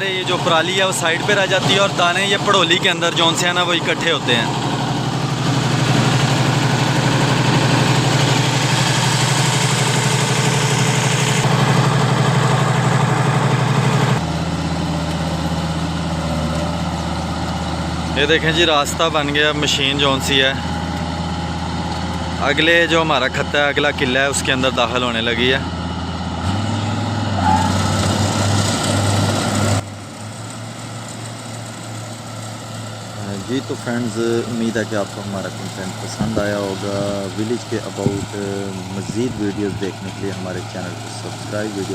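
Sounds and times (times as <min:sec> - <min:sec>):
diesel engine drone: 0:00.0 - 0:41.9.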